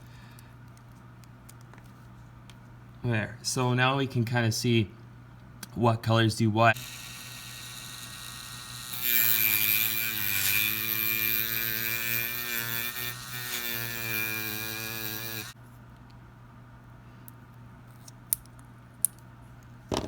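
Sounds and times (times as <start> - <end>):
small power tool motor running: 6.8 - 15.6.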